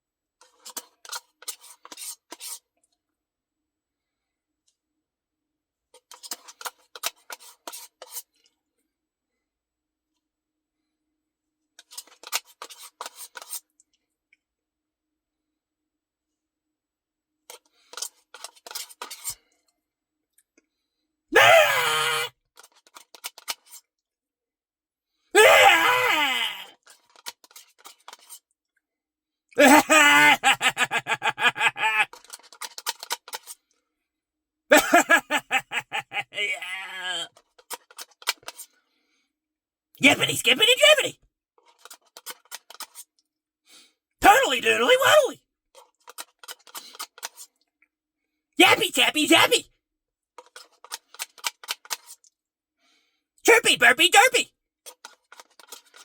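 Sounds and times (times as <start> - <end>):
man making exaggerated vocal noise: 21.4 - 22.3, 25.4 - 26.7, 29.6 - 32.1, 34.7 - 37.3, 40.0 - 41.1, 44.2 - 45.4, 48.6 - 49.7, 53.5 - 54.5.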